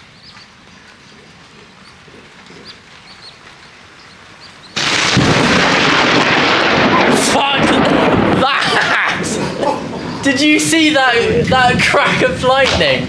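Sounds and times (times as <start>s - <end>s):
faint bird chirps: 0.0s - 4.8s
loud thunder crack: 4.8s - 13.0s.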